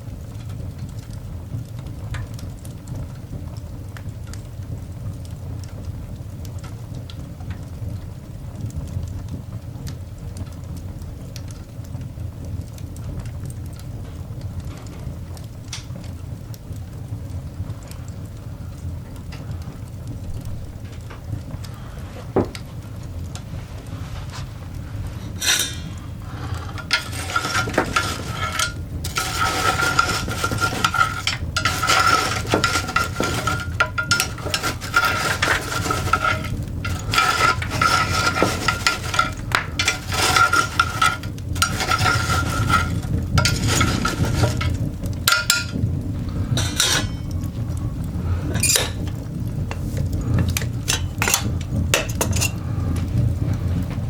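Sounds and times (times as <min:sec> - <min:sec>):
coal fire crackling and popping: 0:00.0 - 0:54.0.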